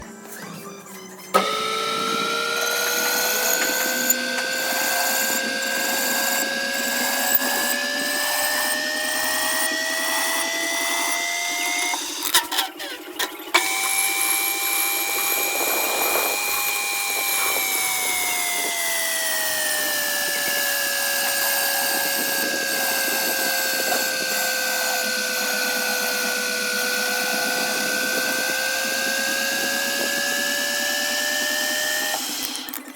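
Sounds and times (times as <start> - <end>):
power tool motor whine: 0.0 - 32.9
clicks: 1.3 - 13.9.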